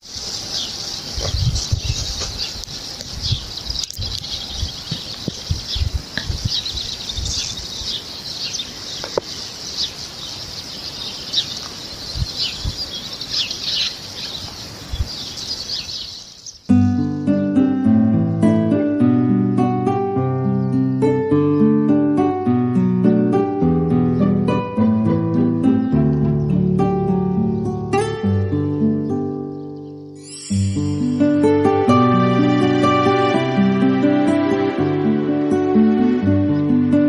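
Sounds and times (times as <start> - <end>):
small birds chirping and trilling: 0.0 - 17.1, 26.2 - 31.3.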